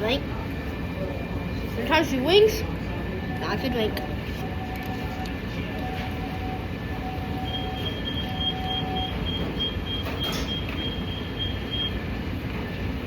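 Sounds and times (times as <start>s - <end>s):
restaurant background rumble: 0.0s - 13.0s
high electronic beep: 5.8s - 12.0s.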